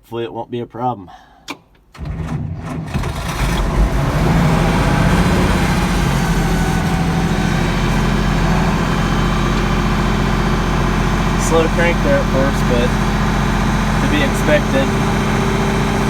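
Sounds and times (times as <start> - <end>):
diesel tractor engine starting and idling: 1.9 - 16.0.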